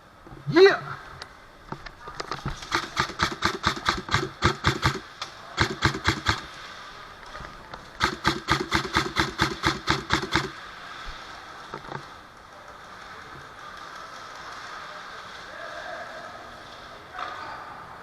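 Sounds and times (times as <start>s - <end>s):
airsoft gun clacking shots: 2.5s - 6.6s, 8.0s - 10.6s
gun motor whine: 2.7s - 5.0s, 5.6s - 6.5s, 8.0s - 10.6s.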